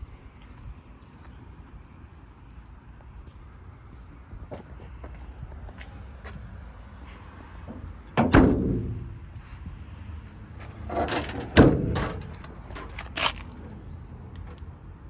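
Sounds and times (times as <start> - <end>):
door slamming: 7.7 - 9.4, 10.7 - 13.7
scraping and rattling: 10.6 - 13.8.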